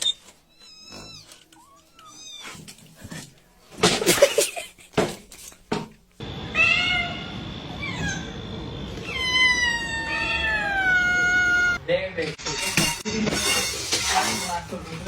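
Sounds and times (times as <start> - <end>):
cat meowing: 6.5 - 8.3, 9.0 - 11.8.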